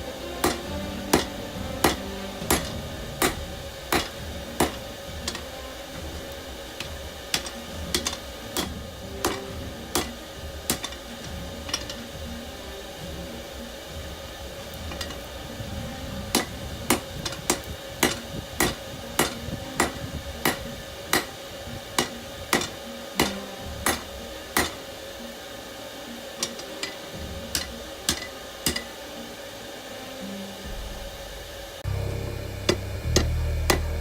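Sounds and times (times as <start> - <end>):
steady hum: 0.0 - 34.0
hammer striking metal on anvil: 0.3 - 12.1, 16.3 - 24.9, 26.4 - 28.9, 32.7 - 34.0.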